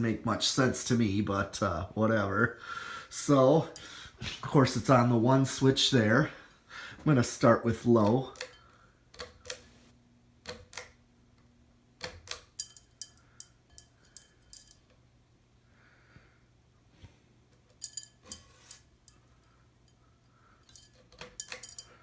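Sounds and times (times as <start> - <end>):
metal bead chain rattling: 20.6 - 22.0.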